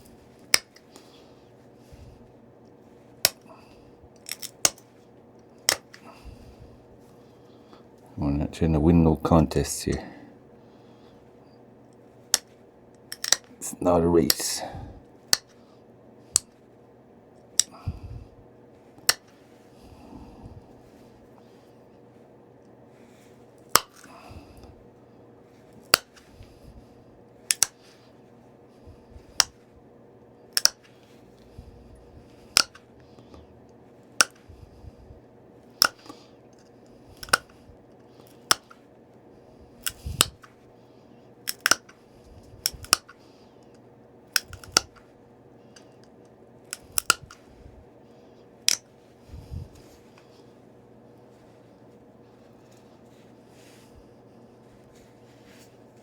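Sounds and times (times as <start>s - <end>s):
stone flakes snapping clicks: 0.4s - 1.0s, 3.2s - 3.4s, 4.2s - 4.8s, 5.6s - 6.0s, 12.3s - 13.6s, 15.3s - 15.6s, 19.0s - 19.4s, 23.6s - 24.2s, 25.8s - 26.3s, 27.5s - 27.9s, 29.3s - 29.6s, 30.5s - 31.0s, 32.5s - 32.8s, 34.2s - 34.5s, 35.8s - 36.2s, 37.2s - 37.6s, 38.2s - 38.8s, 39.8s - 40.5s, 41.5s - 42.0s, 42.6s - 43.2s, 44.3s - 45.0s, 45.8s - 47.4s, 48.6s - 48.9s.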